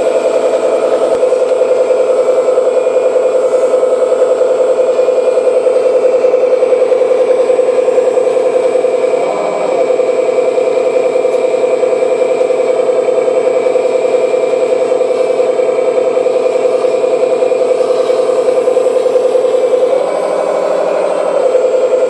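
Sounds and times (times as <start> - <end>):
simulated diesel engine idling: 0.0 - 22.0.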